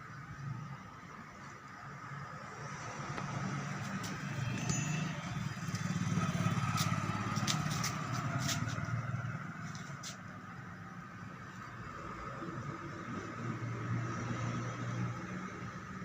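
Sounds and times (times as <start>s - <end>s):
vehicle engine passing by: 2.4s - 10.2s.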